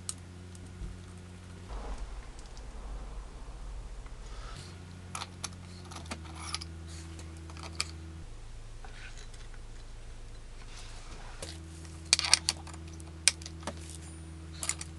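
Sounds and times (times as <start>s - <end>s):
low steady hum: 1.7s - 6.1s.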